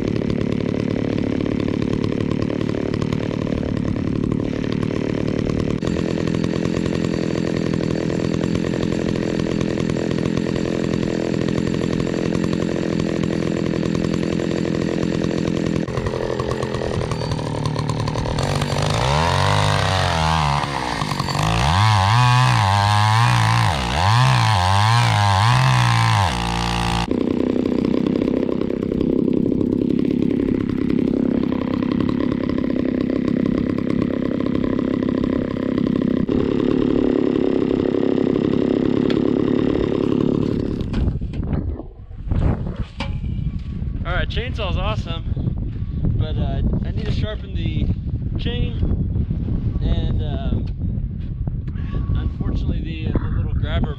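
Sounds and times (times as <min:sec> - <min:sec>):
chainsaw revving and cutting wood: 0:00.0 - 0:41.8.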